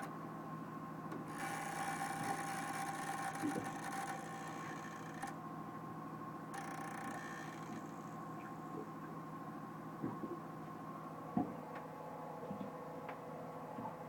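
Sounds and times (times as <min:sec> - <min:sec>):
battery charger humming and whining: 0:01.1 - 0:05.4, 0:06.5 - 0:08.8.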